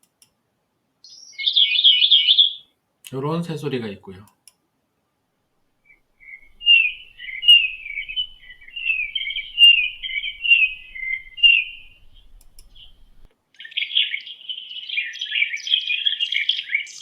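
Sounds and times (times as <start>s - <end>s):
bird chirping and trills: 1.0s - 2.7s, 5.8s - 17.0s.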